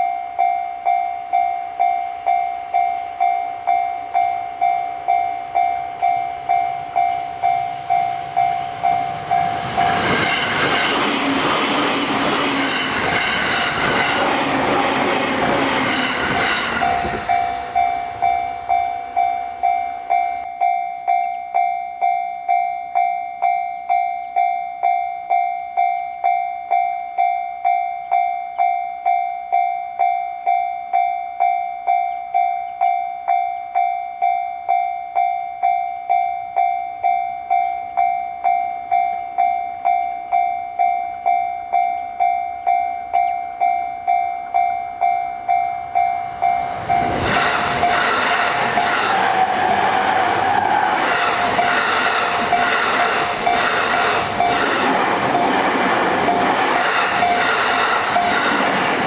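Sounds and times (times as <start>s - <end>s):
railroad crossing bell ringing: 0.0s - 59.0s
train rumble and wheel clatter: 6.4s - 20.5s, 45.4s - 59.0s.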